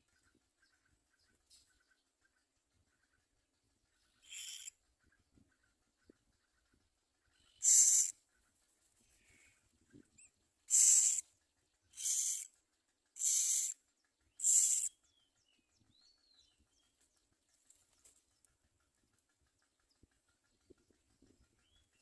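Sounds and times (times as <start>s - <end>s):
nestlings raspy begging calls: 4.2s - 4.7s, 7.4s - 8.2s, 10.7s - 11.3s, 11.9s - 12.5s, 13.2s - 15.0s
faint high chirps: 14.4s - 15.0s.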